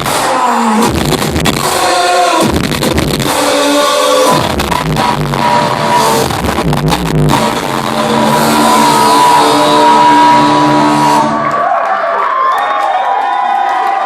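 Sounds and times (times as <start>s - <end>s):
heavy bass hits: 0.0s - 3.5s, 4.2s - 11.4s
long held synth chords: 0.0s - 11.8s
electronic dance music: 0.0s - 12.0s.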